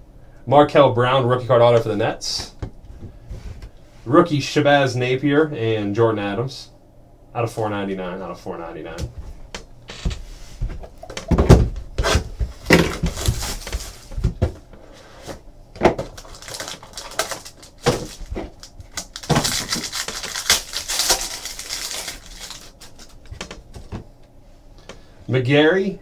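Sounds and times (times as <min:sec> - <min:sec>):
cardboard box clacks and knocks: 0:10.0 - 0:14.6
wrapper crinkling and tearing: 0:12.7 - 0:14.1, 0:16.0 - 0:23.4.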